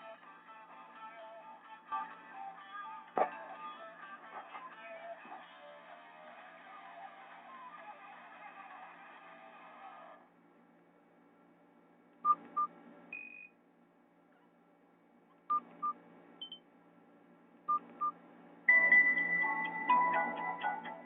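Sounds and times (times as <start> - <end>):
phone keypad beeps: 15.5 - 16.6
ringtone from phone speaker: 18.7 - 21.0.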